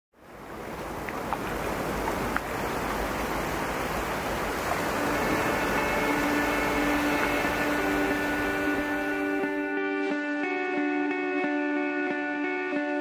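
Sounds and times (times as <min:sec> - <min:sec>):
ocean surf washing ashore: 0:00.2 - 0:09.8
music: 0:04.8 - 0:13.0.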